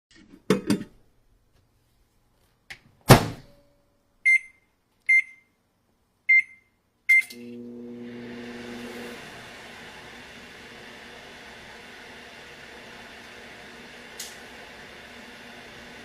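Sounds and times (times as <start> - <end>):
short keypad beeps: 4.3 - 5.5, 6.3 - 7.3
microwave oven humming: 7.3 - 16.0.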